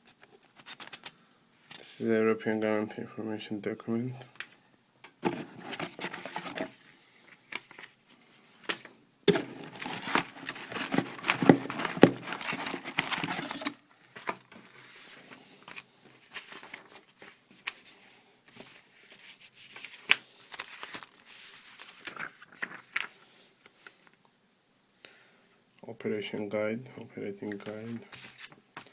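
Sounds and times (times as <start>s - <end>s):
packaging crinkling: 5.2s - 8.0s, 8.6s - 23.2s.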